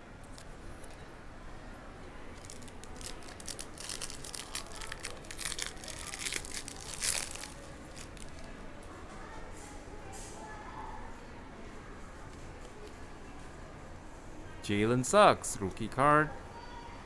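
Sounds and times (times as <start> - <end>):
plastic wrapper tearing and crinkling: 2.3 - 8.5.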